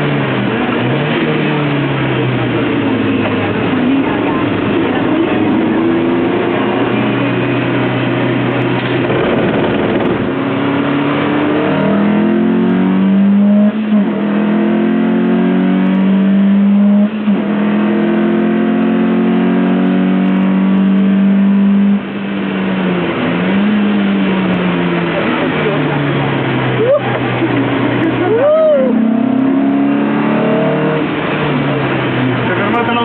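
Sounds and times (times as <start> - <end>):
car engine accelerating: 0.0 - 33.0.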